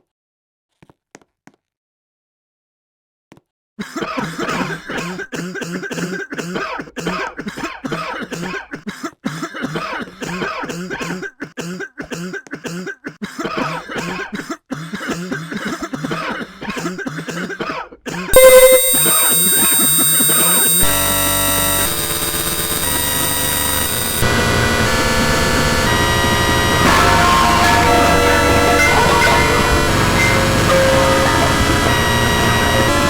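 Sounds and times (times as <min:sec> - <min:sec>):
person coughing: 0:03.8 - 0:18.3
distorted electronic noise burst: 0:18.4 - 0:33.0.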